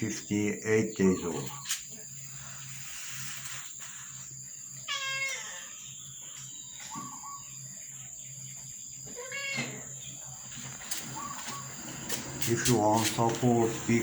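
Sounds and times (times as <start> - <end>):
cat meowing: 4.8 - 5.9, 9.2 - 9.9.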